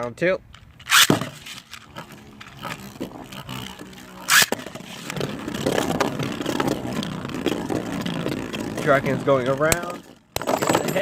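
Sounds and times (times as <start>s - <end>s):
spinning top launcher ripped: 0.8s - 5.2s
spinning tops clashing and rattling: 0.8s - 11.0s.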